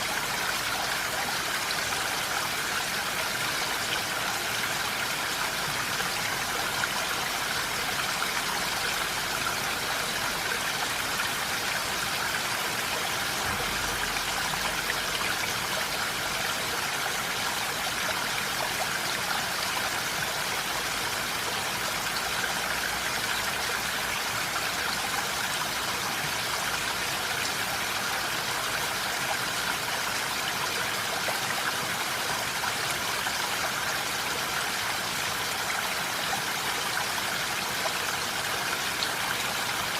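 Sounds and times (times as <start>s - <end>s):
steady rain in a forest: 0.0s - 39.9s.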